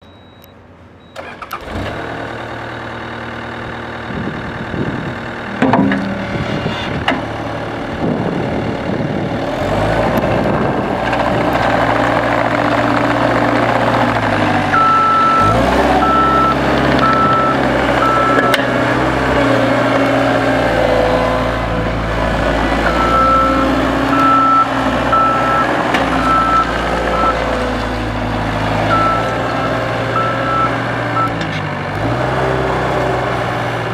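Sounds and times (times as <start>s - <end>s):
reversing alarm beeping: 0.0s - 1.4s, 14.7s - 18.7s, 22.8s - 27.6s, 28.8s - 31.4s
diesel engine starting and running: 0.0s - 33.9s.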